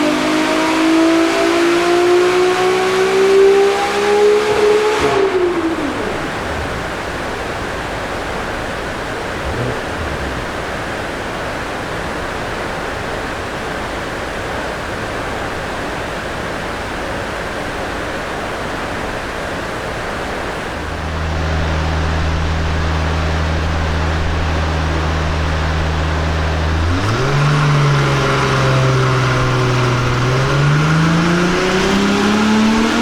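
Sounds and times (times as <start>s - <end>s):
cooling fans rushing air: 2.7s - 11.4s.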